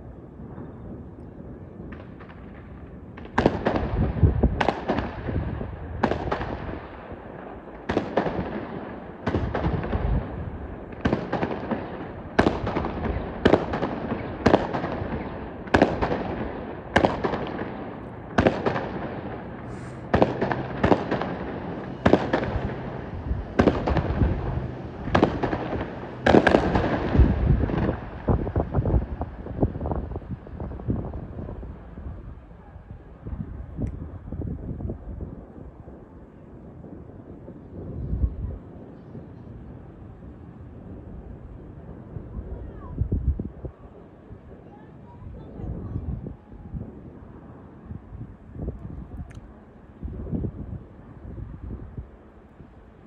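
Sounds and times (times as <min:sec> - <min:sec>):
fireworks bursting with crackle: 0:01.8 - 0:39.6.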